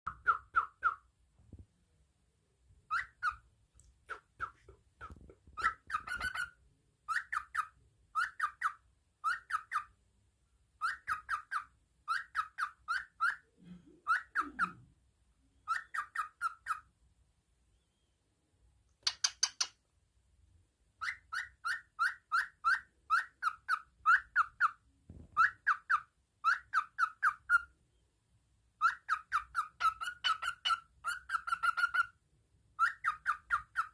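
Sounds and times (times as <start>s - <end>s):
cockatiel chirping whistles: 0.1s - 1.1s, 2.9s - 3.4s, 4.1s - 9.9s, 10.8s - 14.8s, 15.6s - 16.9s, 21.0s - 27.7s, 28.8s - 32.2s, 32.8s - 33.9s.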